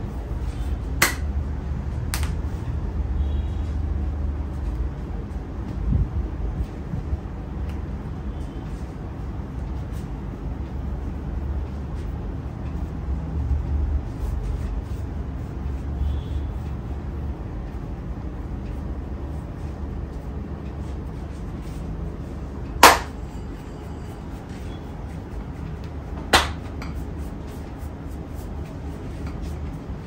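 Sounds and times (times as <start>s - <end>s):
loud sharp crack: 22.8s - 23.2s.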